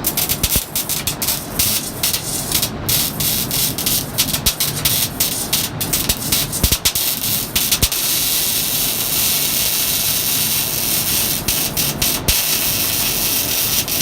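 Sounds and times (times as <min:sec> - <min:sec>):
welding arc crackling: 0:00.0 - 0:14.0.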